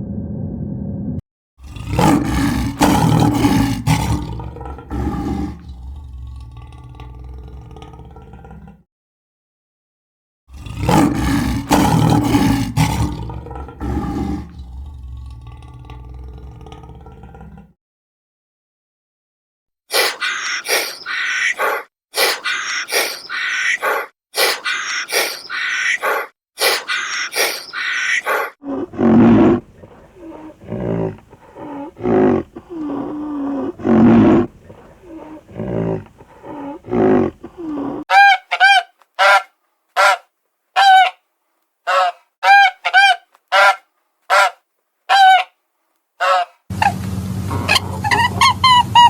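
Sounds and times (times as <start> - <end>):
animal calls: 19.9 - 41.2, 41.9 - 45.5, 46.2 - 49.0.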